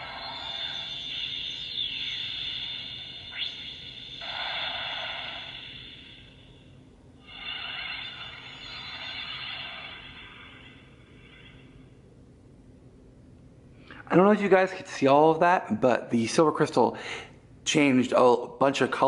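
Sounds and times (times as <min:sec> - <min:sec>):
toy wand shimmering sound effect: 0:00.0 - 0:06.6, 0:07.2 - 0:11.6.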